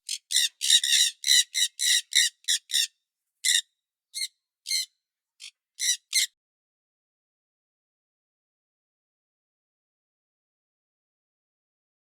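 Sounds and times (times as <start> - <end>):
parrot squawking: 0.1 - 2.9, 4.2 - 4.9, 5.8 - 6.3.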